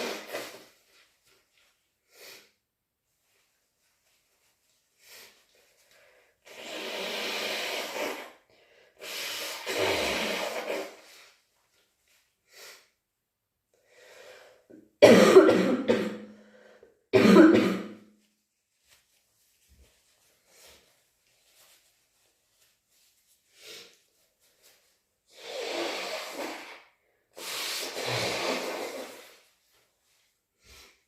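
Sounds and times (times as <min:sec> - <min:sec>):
person coughing: 0:15.0 - 0:16.3, 0:17.2 - 0:18.0.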